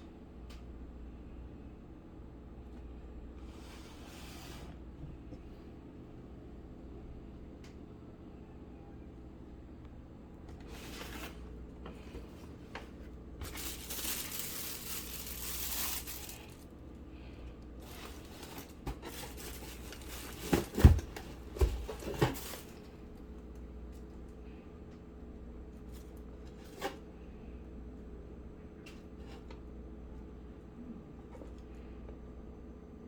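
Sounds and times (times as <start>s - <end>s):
packaging tearing and crinkling: 13.4s - 16.6s, 17.8s - 20.8s.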